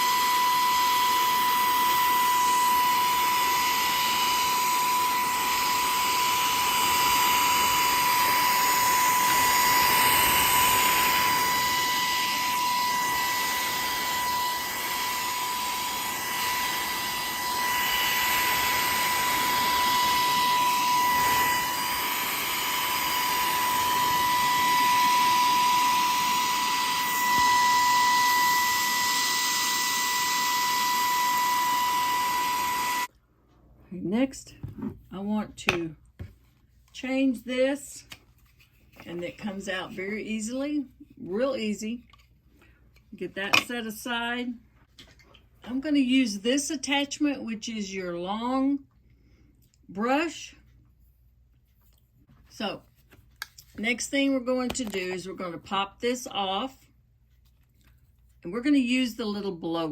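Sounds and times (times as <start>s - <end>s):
handheld vacuum cleaner whine: 0.0s - 33.1s.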